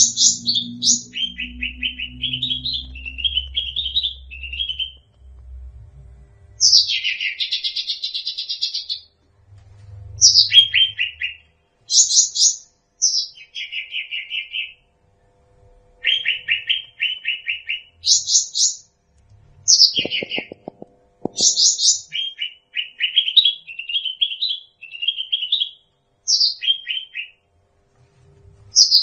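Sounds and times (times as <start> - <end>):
bird singing: 0.0 - 5.1, 6.6 - 9.1, 10.2 - 14.8, 16.0 - 18.8, 19.7 - 27.4, 28.8 - 29.0.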